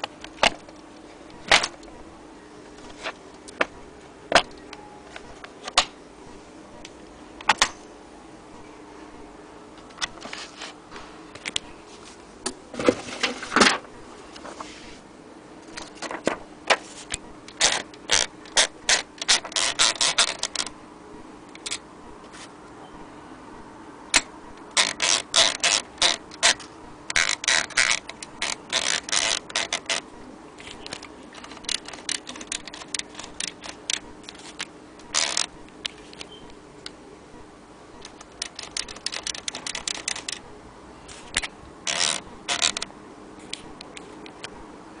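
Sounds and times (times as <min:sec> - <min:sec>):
manual typewriter typing: 0:17.5 - 0:20.7, 0:24.2 - 0:30.1, 0:30.7 - 0:35.5, 0:38.0 - 0:40.4, 0:41.3 - 0:42.9.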